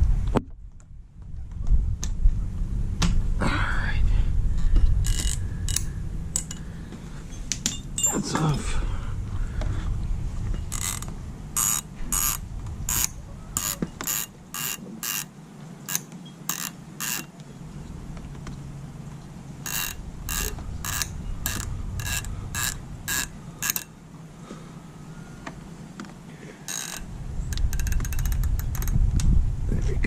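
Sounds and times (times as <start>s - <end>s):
hand ratchet clicking: 5.0s - 6.6s, 10.7s - 15.3s, 15.9s - 17.3s, 19.6s - 24.0s, 26.7s - 29.0s.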